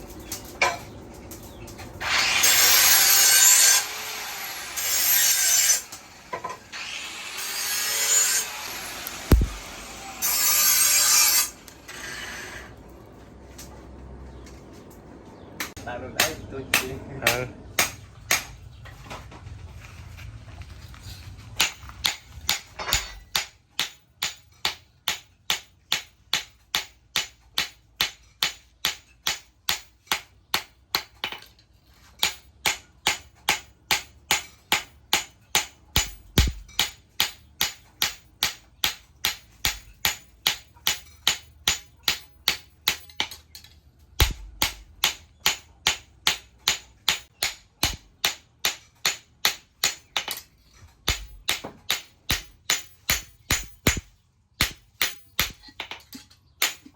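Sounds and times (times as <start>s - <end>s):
hammer on metal: 9.3s - 9.7s, 32.2s - 43.4s, 44.2s - 50.4s, 51.1s - 55.8s.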